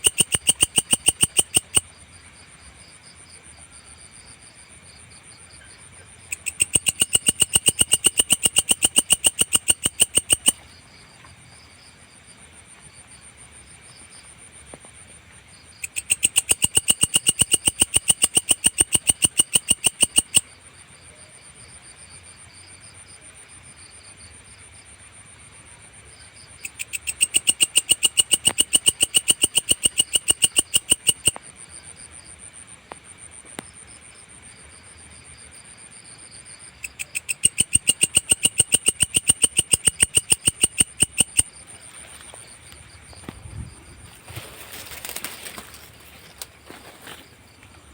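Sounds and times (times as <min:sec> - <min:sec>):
grasshopper clicking: 0:00.0 - 0:01.8, 0:06.3 - 0:10.6, 0:15.8 - 0:20.4, 0:26.6 - 0:31.4, 0:36.8 - 0:41.5.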